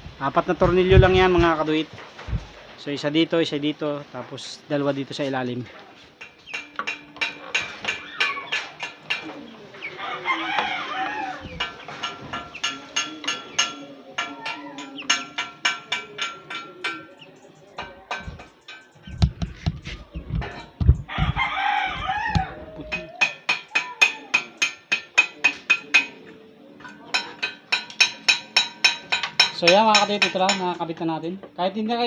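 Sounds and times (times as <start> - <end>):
dull low thumps: 0.0 - 1.6, 2.2 - 2.6, 19.1 - 22.9
rooster crowing: 9.8 - 11.8, 20.9 - 24.5.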